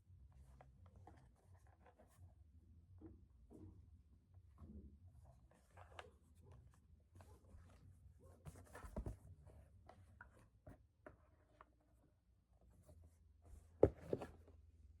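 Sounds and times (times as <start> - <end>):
objects being handled: 13.5 - 14.5.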